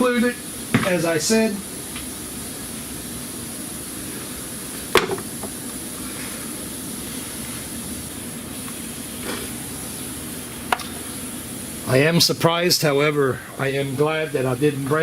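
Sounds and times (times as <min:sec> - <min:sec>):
steady background hum and hiss: 0:00.0 - 0:15.0
sharp knock of parts handled: 0:05.0 - 0:05.5.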